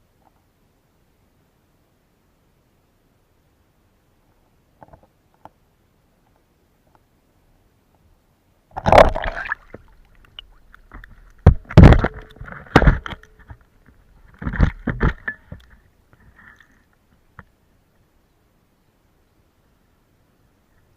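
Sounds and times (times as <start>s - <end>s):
water sloshing: 8.8s - 15.8s.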